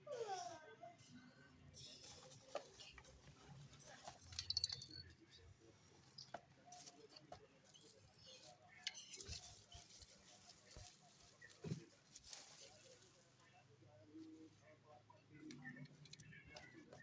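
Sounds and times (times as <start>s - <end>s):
small objects clicking and rattling: 4.0s - 5.2s.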